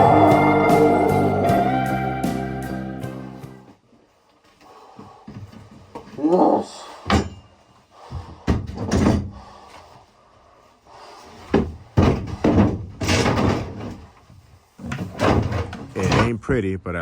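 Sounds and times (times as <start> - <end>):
floor cracking and scraping: 11.4 - 16.3.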